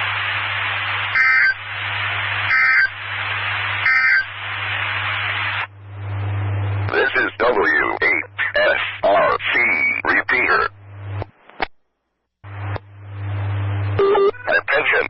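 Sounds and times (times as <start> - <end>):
low hum: 0.0 - 7.0, 10.7 - 14.8
radio hiss: 0.0 - 11.6, 12.5 - 15.0
two-tone data bursts: 2.5 - 3.0, 3.8 - 4.4, 14.0 - 15.0.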